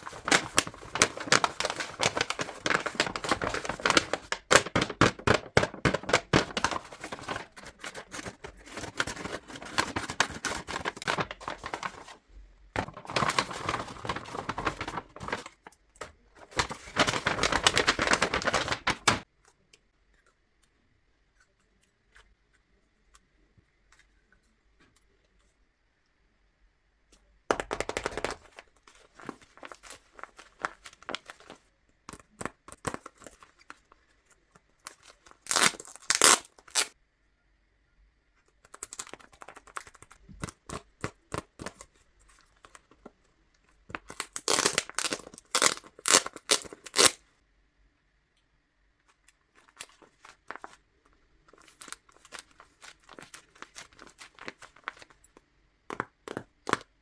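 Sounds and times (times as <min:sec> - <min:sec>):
paper crackling and tearing: 0:00.0 - 0:12.2, 0:12.8 - 0:19.2, 0:34.9 - 0:37.0, 0:43.9 - 0:47.2.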